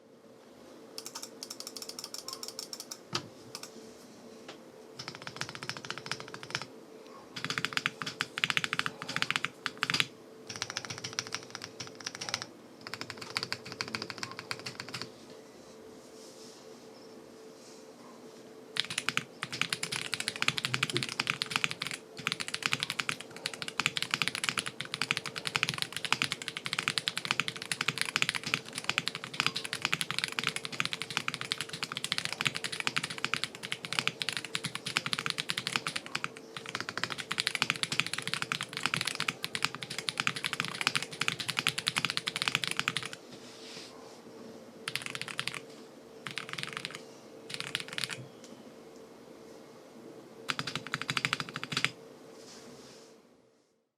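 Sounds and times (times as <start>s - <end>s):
faint steady hum: 0.0s - 53.9s
mechanical keyboard typing: 1.0s - 3.0s, 5.0s - 6.7s, 7.4s - 15.1s, 18.8s - 43.2s, 44.9s - 45.6s, 46.2s - 48.2s, 50.5s - 52.0s.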